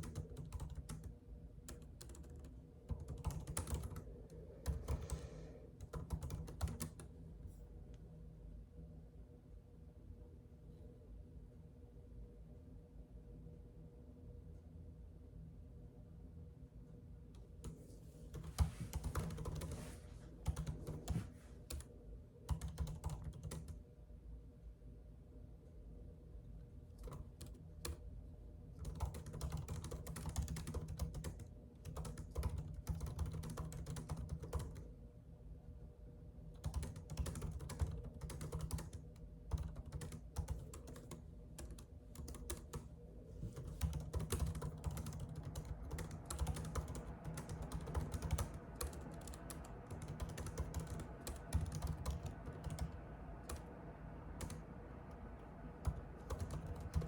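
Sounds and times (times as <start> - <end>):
typing on computer keyboard: 0.0 - 7.1, 17.6 - 21.9, 22.5 - 23.8, 27.0 - 28.0, 28.8 - 34.9, 36.6 - 53.7, 55.8 - 57.0.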